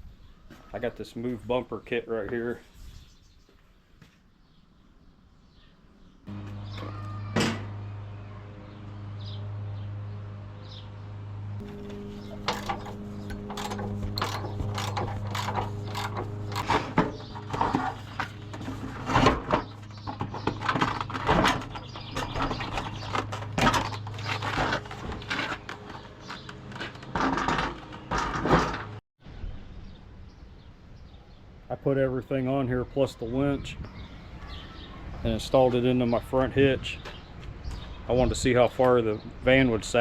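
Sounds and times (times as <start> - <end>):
steady low hum: 6.3 - 28.9
metallic tool clicks and clanks: 11.6 - 17.0.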